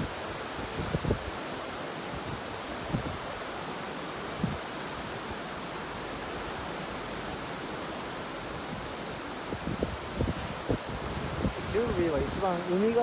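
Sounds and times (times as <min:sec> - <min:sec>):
ocean surf hissing: 0:02.7 - 0:13.0.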